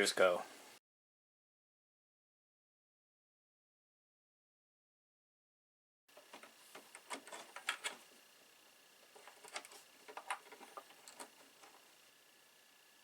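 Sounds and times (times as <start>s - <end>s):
faint high whine: 0.0s - 0.8s, 6.1s - 13.0s
plastic parts clicking and knocking: 6.1s - 8.0s, 9.1s - 11.8s.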